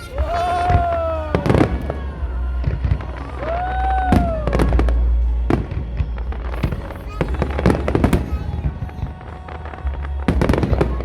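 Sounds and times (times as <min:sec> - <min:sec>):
fireworks bangs and crackles: 0:00.0 - 0:11.0
low rumble: 0:00.0 - 0:11.0.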